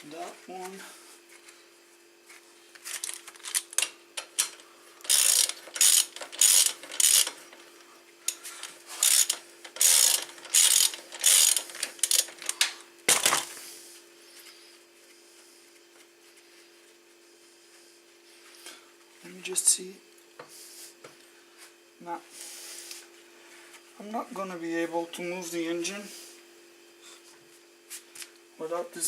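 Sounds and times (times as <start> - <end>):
ratchet wrench clicking: 3.4 - 7.4, 9.0 - 12.6.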